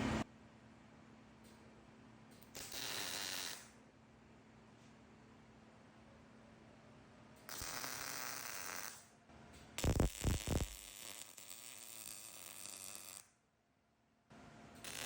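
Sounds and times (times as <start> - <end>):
arc welder hissing: 2.5 - 3.7, 7.5 - 9.0, 9.8 - 13.3.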